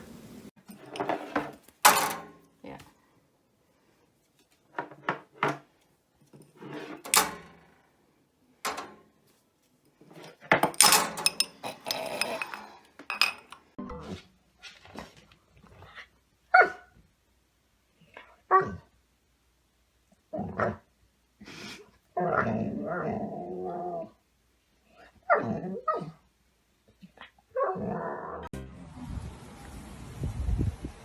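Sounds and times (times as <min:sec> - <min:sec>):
household objects clattering: 0:00.6 - 0:02.6, 0:04.4 - 0:07.8, 0:08.6 - 0:09.2, 0:09.9 - 0:13.8
dog barking: 0:16.5 - 0:16.9
dog yelping: 0:16.5 - 0:16.9.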